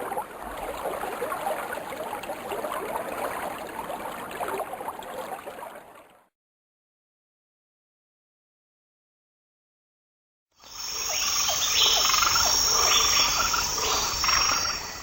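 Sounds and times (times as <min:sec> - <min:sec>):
stream babbling: 0:00.0 - 0:06.1, 0:10.7 - 0:15.0.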